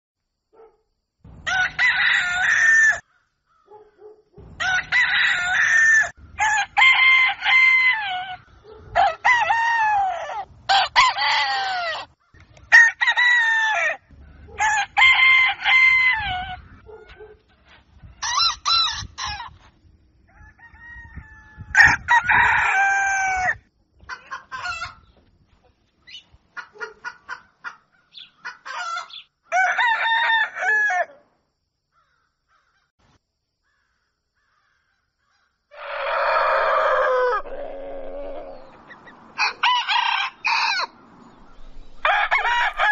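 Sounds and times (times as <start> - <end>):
roosters crowing: 1.3 - 3.7, 4.4 - 17.2, 18.1 - 25.1, 28.2 - 31.2, 35.7 - 42.9
choppy clucking calls: 25.6 - 29.2.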